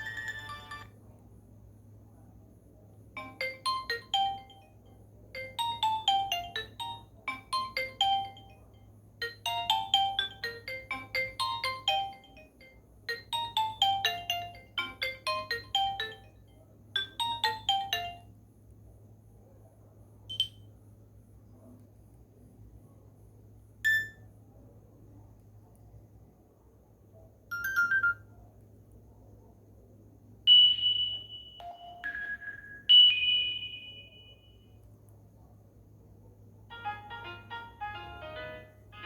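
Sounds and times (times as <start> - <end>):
phone ringtone melody: 0.0 - 0.9, 3.2 - 16.4, 17.0 - 18.3, 27.5 - 28.2, 30.5 - 34.5, 36.7 - 39.0.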